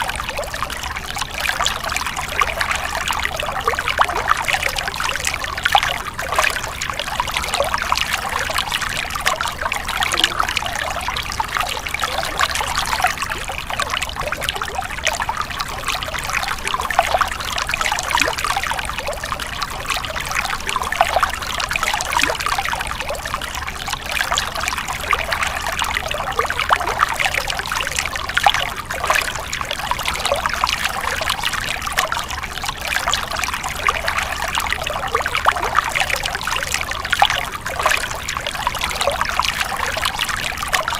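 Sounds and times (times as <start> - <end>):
stream water splashing over rocks: 0.0 - 40.9.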